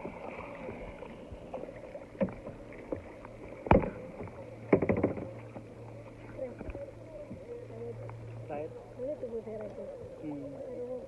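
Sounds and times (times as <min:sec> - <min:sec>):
paddle splashing in water: 0:00.0 - 0:11.0
paddle knocking against hull: 0:01.5 - 0:05.7.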